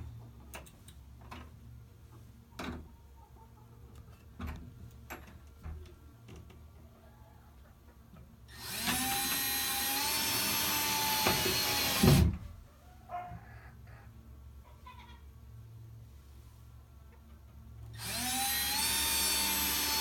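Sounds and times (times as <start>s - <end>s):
power drill driving a screw: 8.5s - 12.3s, 18.0s - 20.0s
thump: 12.0s - 12.5s.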